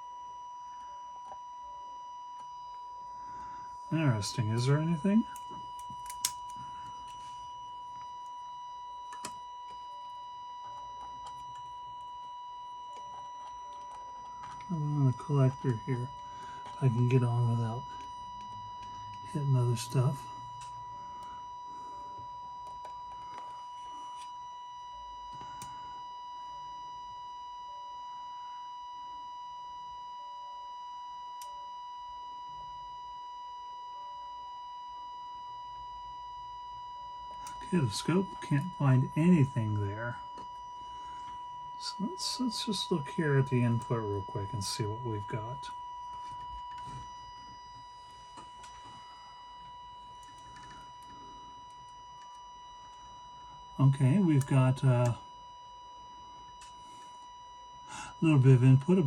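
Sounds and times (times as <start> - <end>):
distorted buzzy test tone: 3.4 - 8.1, 13.0 - 24.0, 37.4 - 52.0, 52.8 - 55.5, 57.8 - 59.0
faint probe clicks: 5.4 - 6.6
distorted high-pitched test tone: 13.8 - 21.4, 41.0 - 49.6.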